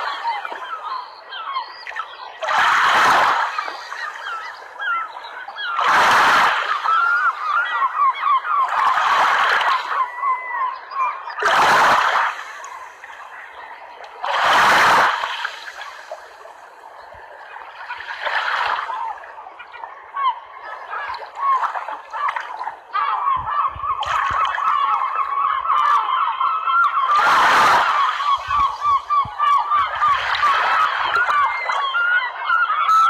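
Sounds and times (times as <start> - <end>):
water birds calling: 0.0 - 33.0
water splashing: 11.3 - 19.3.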